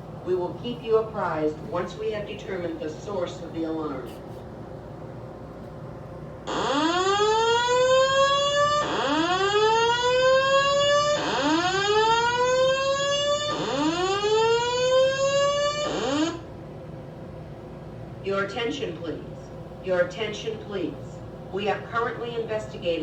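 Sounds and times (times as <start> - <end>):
fire alarm whoop tone: 6.5 - 16.5.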